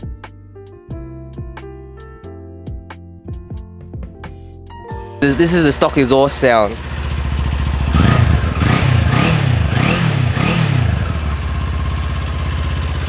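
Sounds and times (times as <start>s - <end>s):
motorcycle engine idling and revving: 5.2s - 13.0s.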